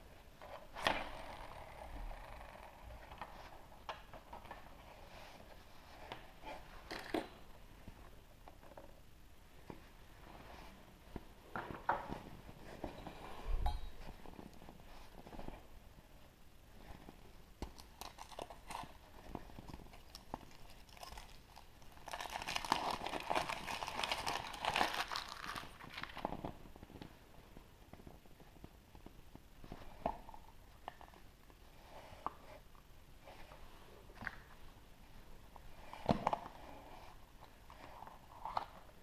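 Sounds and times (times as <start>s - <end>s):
wrapper crinkling and crunching: 17.8s - 18.9s, 19.9s - 26.2s
wrapper clicks and crackles: 20.0s - 26.2s.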